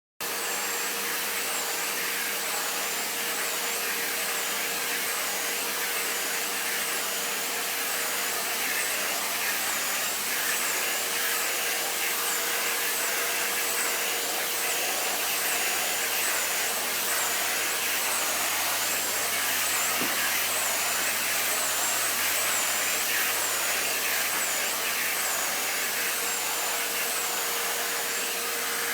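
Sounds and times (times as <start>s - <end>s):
vacuum cleaner running: 0.2s - 28.9s.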